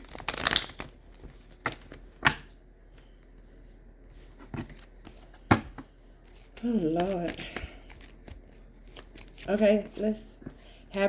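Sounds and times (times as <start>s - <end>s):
cards rustling while shuffled: 0.0s - 2.3s, 6.2s - 10.2s.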